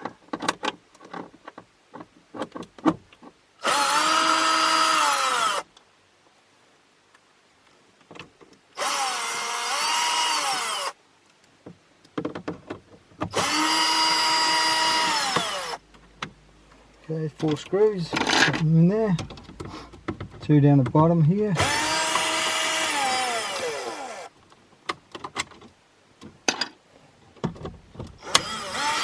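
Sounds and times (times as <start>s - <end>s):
power drill motor whine: 3.6s - 5.6s, 8.8s - 11.0s, 13.3s - 15.8s, 21.6s - 24.3s, 28.2s - 29.0s.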